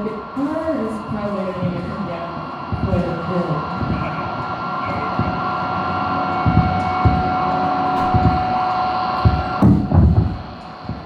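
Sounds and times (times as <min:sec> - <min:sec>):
electrical hum: 0:00.0 - 0:11.0
low thuds: 0:07.9 - 0:10.5.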